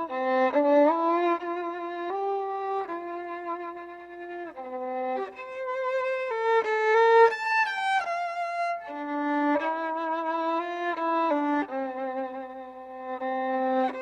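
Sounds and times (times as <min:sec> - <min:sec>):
violin playing slow melody: 0:00.0 - 0:14.0.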